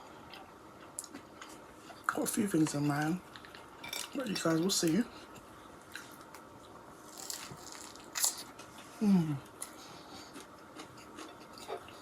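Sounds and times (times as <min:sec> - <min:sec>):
chewing with wet clicks: 0:00.3 - 0:01.6
food crunch: 0:07.1 - 0:08.7.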